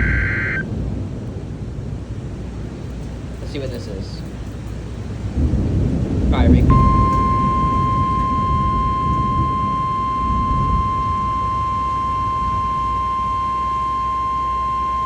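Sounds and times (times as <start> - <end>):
steady warning alarm tone: 0.0 - 0.6, 6.7 - 15.0
low background rumble: 0.0 - 15.0.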